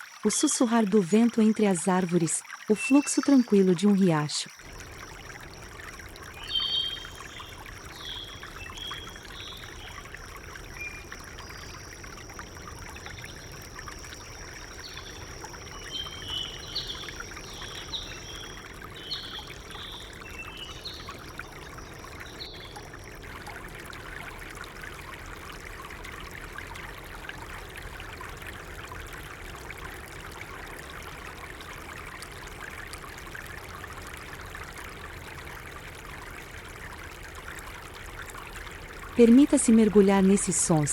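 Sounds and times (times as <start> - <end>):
flowing stream: 0.0 - 40.9
steady high tone: 39.2 - 40.9.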